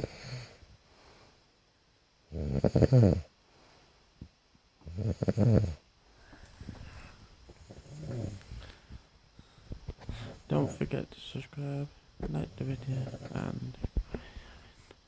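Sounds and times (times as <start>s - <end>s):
person snoring: 2.3s - 3.3s, 4.8s - 5.8s, 7.6s - 8.8s.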